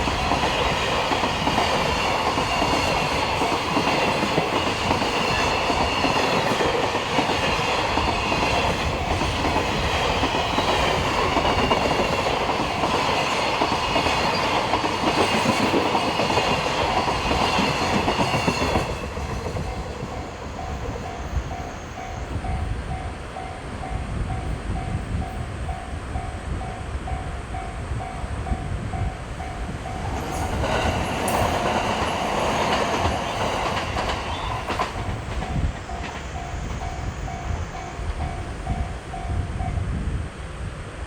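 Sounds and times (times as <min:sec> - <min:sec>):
train passing over crossing: 0:00.0 - 0:40.8.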